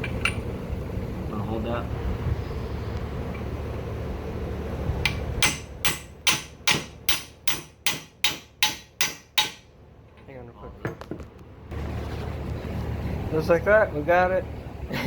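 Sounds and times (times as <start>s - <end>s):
hammer striking metal part: 5.0s - 9.7s.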